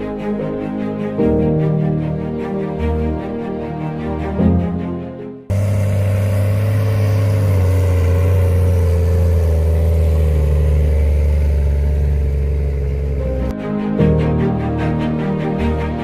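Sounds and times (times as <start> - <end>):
diesel tractor engine running: 5.5 - 13.5.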